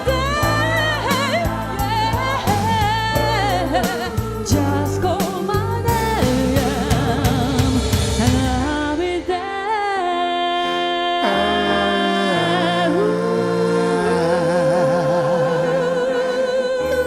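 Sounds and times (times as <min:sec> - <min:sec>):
backing track beat: 0:00.0 - 0:09.5
backing vocal harmonies: 0:00.0 - 0:17.0
lead vocal singing: 0:00.0 - 0:17.0
piano: 0:00.0 - 0:17.0.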